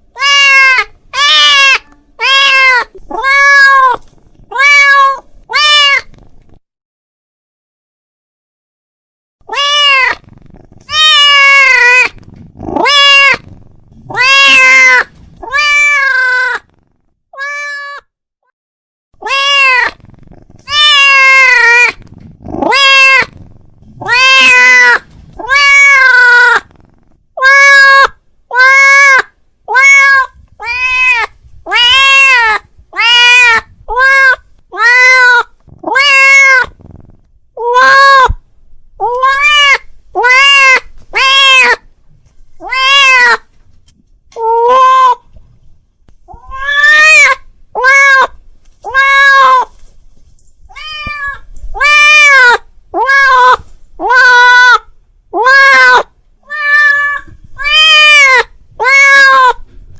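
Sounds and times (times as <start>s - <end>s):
cat meowing loudly: 0.1s - 6.1s, 9.4s - 10.3s, 10.9s - 13.4s, 14.0s - 16.7s, 17.3s - 18.1s, 19.2s - 20.0s, 20.6s - 22.0s, 22.6s - 23.4s, 24.0s - 26.7s, 27.4s - 36.8s, 37.6s - 38.4s, 39.0s - 41.9s, 42.6s - 43.5s, 44.4s - 45.3s, 46.4s - 49.8s, 50.7s - 59.7s.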